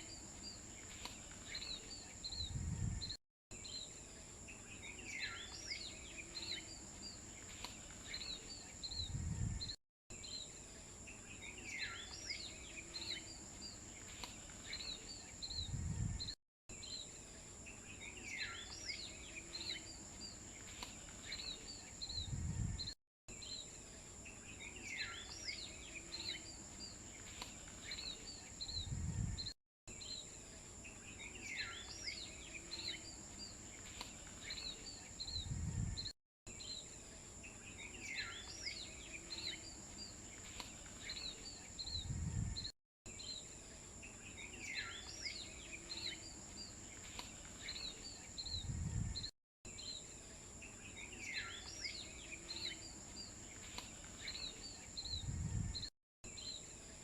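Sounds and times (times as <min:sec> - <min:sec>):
birds chirping and calling: 0:17.7 - 0:23.6, 0:24.3 - 0:30.2, 0:30.9 - 0:36.8, 0:37.5 - 0:43.4, 0:44.1 - 0:50.0, 0:50.6 - 0:56.6.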